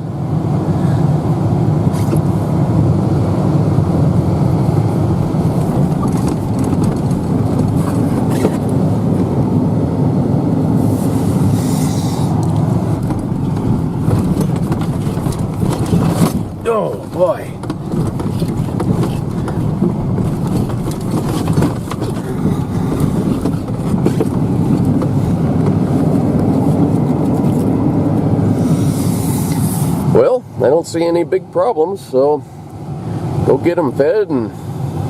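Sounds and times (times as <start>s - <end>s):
vehicle engine and road rumble: 0.0s - 35.0s
vehicle knocks and rattles: 4.3s - 9.4s, 12.5s - 28.4s
short hiss: 10.8s - 12.4s.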